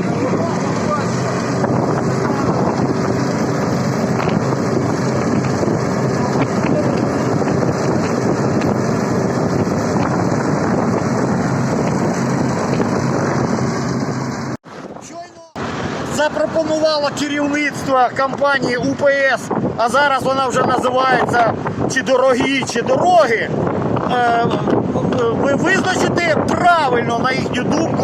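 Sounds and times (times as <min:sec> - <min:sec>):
heavy machinery engine running: 0:00.0 - 0:14.7, 0:15.6 - 0:16.7
wind buffeting microphone: 0:00.0 - 0:28.0.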